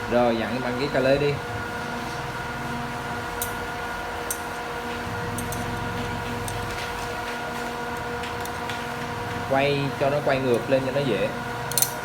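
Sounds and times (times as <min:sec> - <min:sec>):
machine humming: 0:00.0 - 0:12.0
wrench clicking on bolt: 0:11.7 - 0:12.0.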